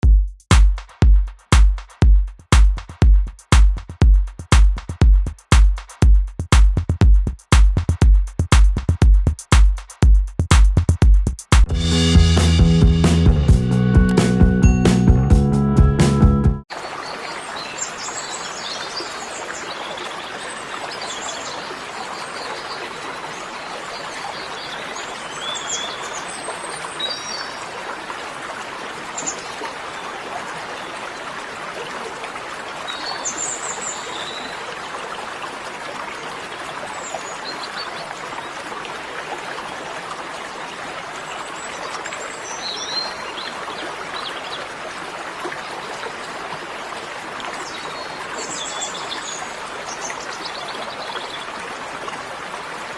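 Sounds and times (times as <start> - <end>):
flowing stream water: 16.6 - 52.9.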